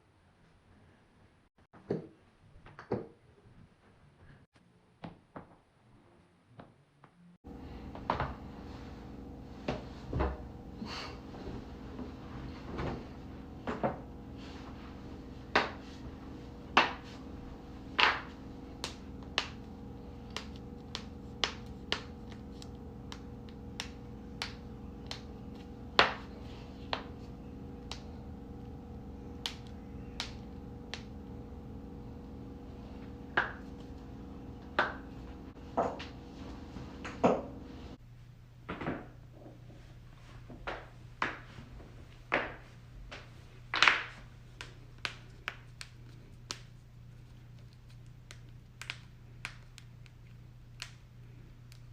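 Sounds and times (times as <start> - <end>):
low hum: 7.5 - 38.6.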